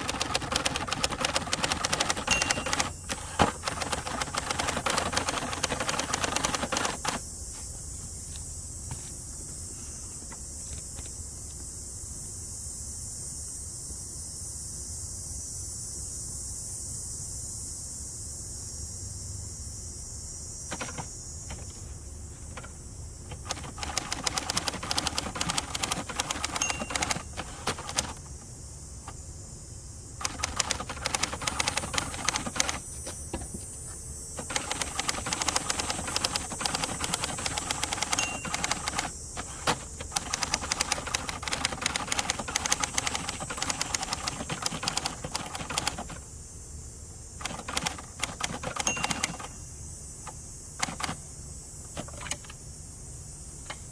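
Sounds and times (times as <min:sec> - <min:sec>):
typewriter key strikes: 0:00.0 - 0:07.2, 0:20.7 - 0:21.6, 0:23.3 - 0:28.3, 0:30.2 - 0:32.8, 0:34.4 - 0:46.2, 0:47.4 - 0:49.6, 0:50.8 - 0:51.2, 0:51.9 - 0:52.6.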